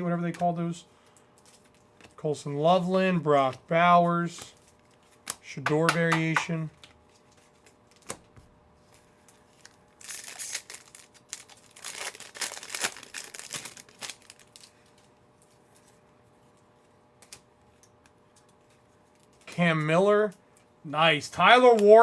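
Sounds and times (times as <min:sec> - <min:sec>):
foil wrapper crinkling and tearing: 0:09.5 - 0:15.0.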